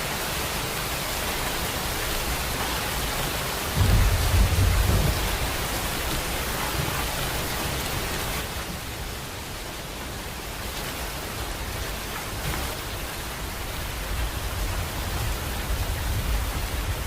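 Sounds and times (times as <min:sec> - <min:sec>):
steady rain: 0:00.0 - 0:17.0
thunder rumble: 0:03.7 - 0:08.2.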